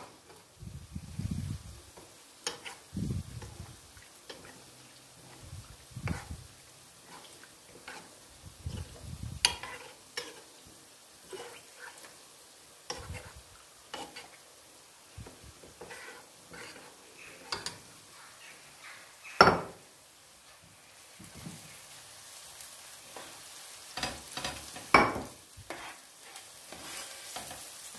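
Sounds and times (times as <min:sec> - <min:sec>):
faint hiss: 0:00.0 - 0:27.9
utensils clinking on cookware: 0:15.8 - 0:17.8, 0:24.0 - 0:25.9.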